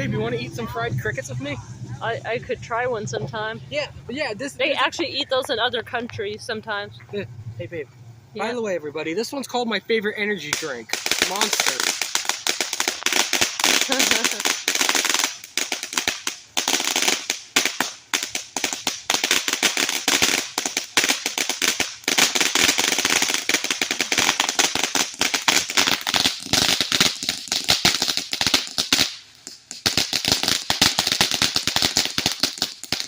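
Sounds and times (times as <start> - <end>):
firework crackling pops: 10.4 - 33.0.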